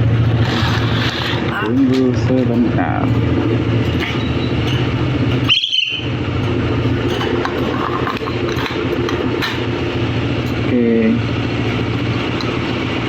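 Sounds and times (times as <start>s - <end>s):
low engine-like hum: 0.0s - 13.0s
myna bird whistle: 5.4s - 6.2s.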